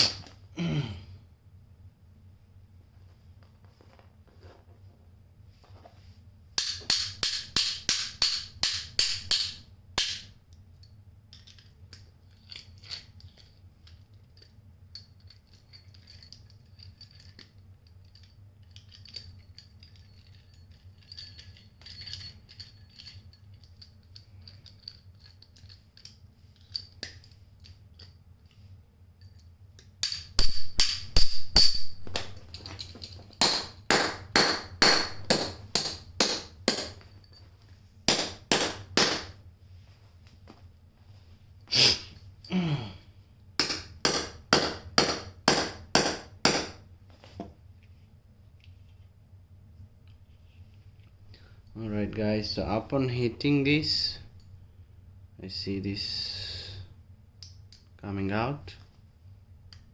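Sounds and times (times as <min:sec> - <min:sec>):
hammer striking metal ratchet: 0:06.6 - 0:10.3
faint metal clinks: 0:10.7 - 0:28.2.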